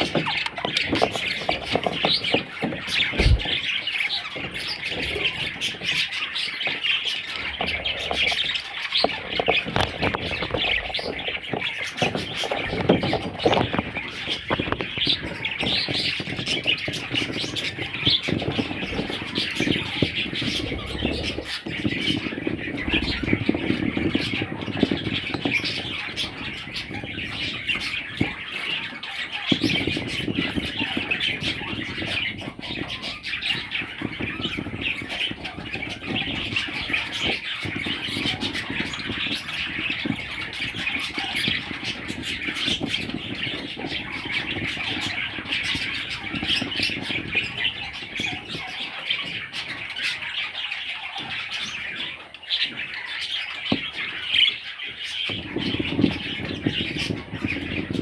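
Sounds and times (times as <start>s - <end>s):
bird chicks squawking and chirping: 0.0s - 58.0s.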